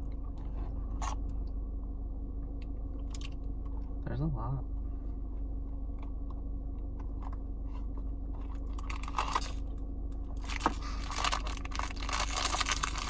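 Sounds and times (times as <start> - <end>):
steady low hum: 0.0 - 13.0
packaging crinkling and tearing: 8.7 - 9.6, 10.4 - 13.0
plastic packaging clicks: 10.4 - 13.0.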